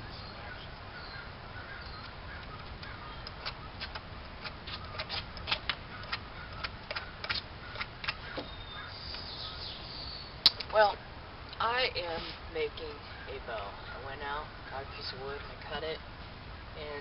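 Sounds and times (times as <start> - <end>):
blade scraping wood: 3.3 - 8.5.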